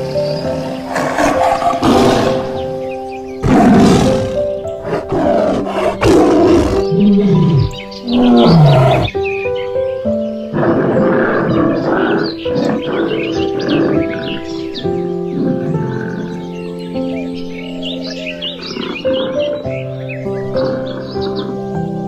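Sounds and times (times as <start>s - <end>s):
tiger roaring: 0.0s - 2.7s, 3.4s - 9.2s, 10.5s - 14.7s, 18.6s - 19.7s
background music with held notes: 0.0s - 22.0s.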